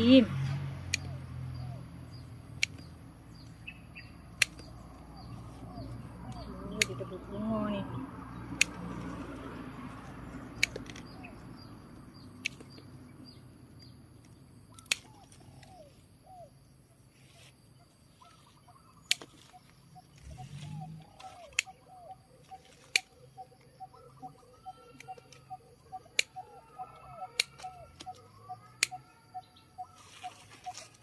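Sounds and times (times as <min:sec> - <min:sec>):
small birds chirping: 0:00.0 - 0:31.0
sharp clicks: 0:00.8 - 0:01.2, 0:02.5 - 0:03.6, 0:04.3 - 0:05.1, 0:06.2 - 0:07.2, 0:10.4 - 0:13.1, 0:13.8 - 0:15.8, 0:19.0 - 0:21.9, 0:24.3 - 0:29.1.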